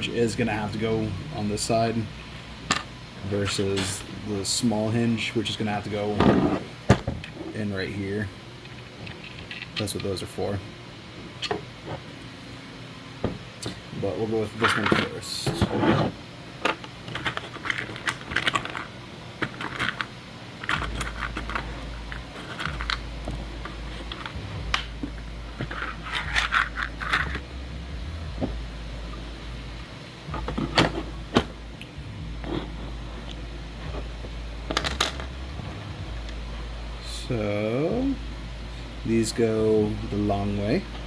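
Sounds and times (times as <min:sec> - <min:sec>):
plastic parts clicking and scraping: 0:14.6 - 0:23.0, 0:23.6 - 0:24.9, 0:25.6 - 0:27.4.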